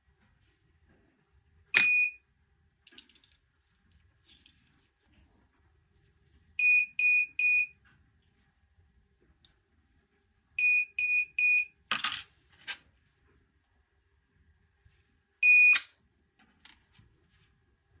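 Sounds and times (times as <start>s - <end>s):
solenoid lock click: 1.8s - 2.0s, 15.6s - 15.9s
door lock buzzer beeps: 1.8s - 2.2s, 6.6s - 7.7s, 10.6s - 11.7s, 15.4s - 15.9s.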